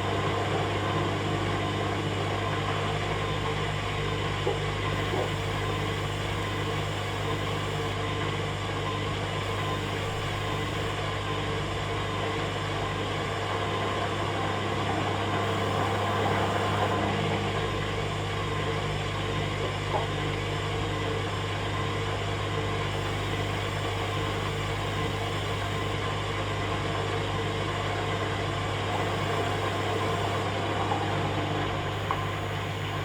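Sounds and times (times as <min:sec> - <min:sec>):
washing machine hum: 0:04.6 - 0:08.0, 0:09.4 - 0:11.0, 0:13.4 - 0:18.0, 0:22.9 - 0:26.0, 0:28.8 - 0:33.0.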